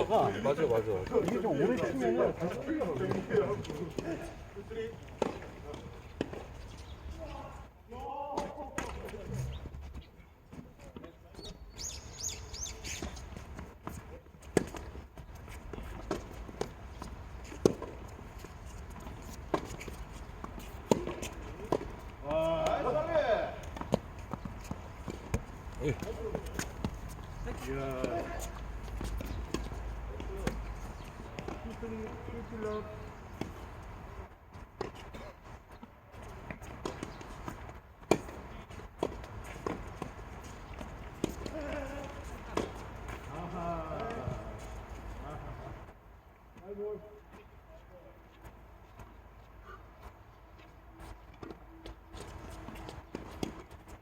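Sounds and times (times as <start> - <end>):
tennis balls struck by rackets: 0.0 - 7.1, 8.3 - 9.5, 11.8 - 44.6
tennis balls bouncing on court: 0.0 - 7.3, 8.3 - 45.8, 48.4 - 54.0
racket hitting tennis ball: 19.3 - 22.0.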